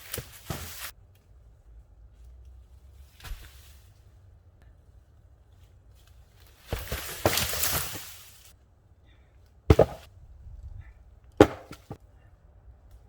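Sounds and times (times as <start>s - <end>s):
dead wood crackling and snapping: 6.0s - 8.6s
sharp wooden knocks: 9.7s - 10.1s, 11.4s - 12.0s.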